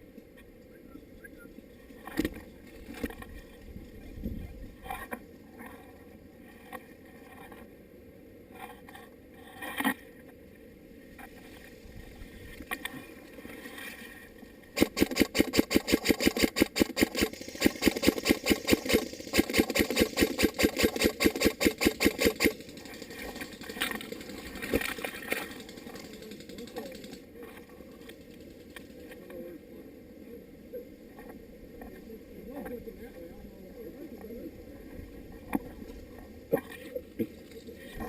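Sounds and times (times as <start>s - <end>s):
airsoft gun firing full-auto: 14.8s - 23.2s.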